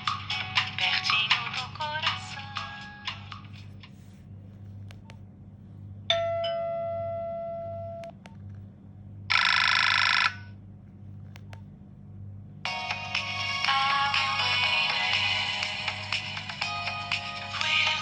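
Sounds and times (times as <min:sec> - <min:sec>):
phone chime: 0:06.1 - 0:08.0
ringtone melody: 0:12.7 - 0:18.0.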